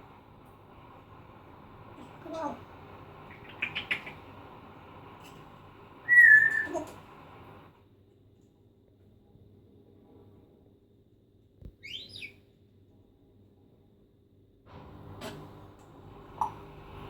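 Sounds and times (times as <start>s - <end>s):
parrot whistled chirps: 6.0s - 6.9s, 11.8s - 12.4s.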